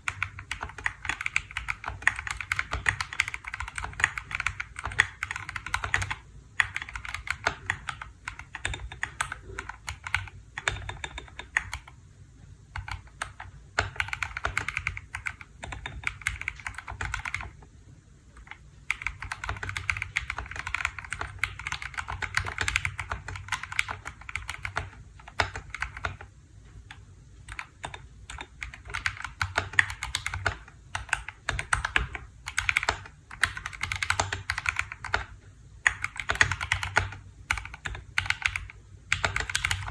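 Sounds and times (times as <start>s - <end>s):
mechanical keyboard typing: 0.0s - 12.0s, 12.7s - 17.7s, 18.3s - 39.9s.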